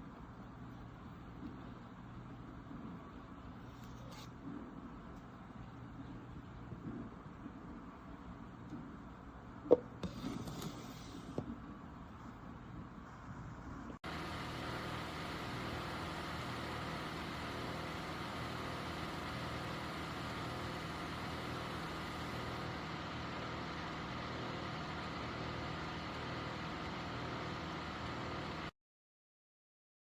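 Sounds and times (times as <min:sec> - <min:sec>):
humidifier hum and hiss: 0:00.0 - 0:28.7
thin high whine: 0:13.0 - 0:28.7.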